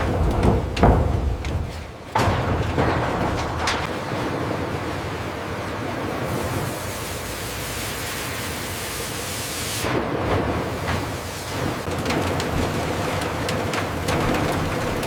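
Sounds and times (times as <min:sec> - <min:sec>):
rushing hiss: 0:06.4 - 0:09.9.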